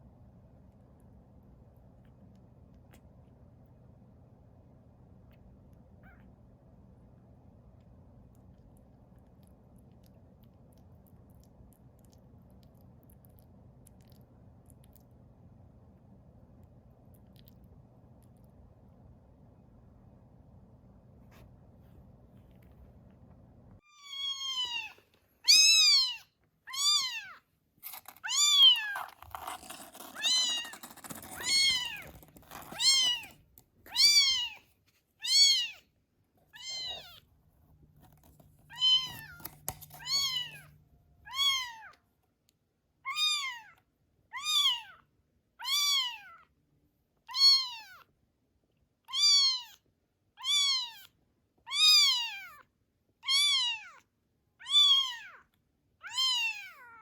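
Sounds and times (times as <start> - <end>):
kitten meowing: 23.9 - 27.4, 33.9 - 34.6, 36.5 - 37.2, 38.7 - 40.7, 41.3 - 42.0, 43.1 - 45.0, 45.6 - 46.5, 47.3 - 48.0, 49.1 - 49.8, 50.4 - 51.1, 51.7 - 52.6, 53.2 - 54.0, 54.6 - 55.4, 56.0 - 57.0
rustling: 27.8 - 35.2.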